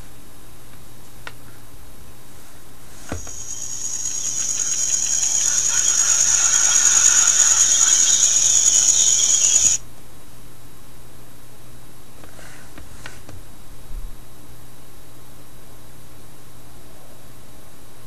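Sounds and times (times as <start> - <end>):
shimmering insect chorus: 3.1 - 9.8.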